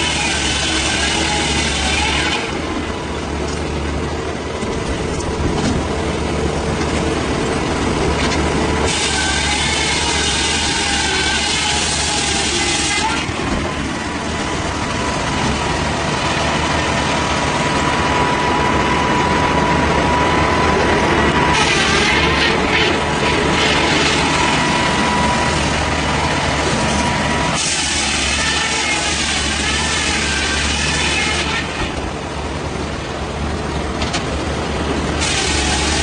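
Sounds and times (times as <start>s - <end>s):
heavy machinery low hum: 0.0s - 36.0s
hiss: 27.6s - 31.5s, 35.2s - 36.0s.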